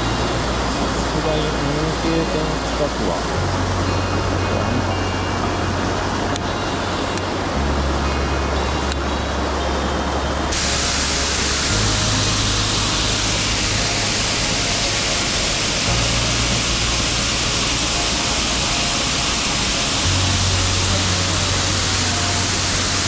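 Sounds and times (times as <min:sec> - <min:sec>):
background music: 0:00.0 - 0:23.0
mountain stream rushing: 0:00.0 - 0:23.0.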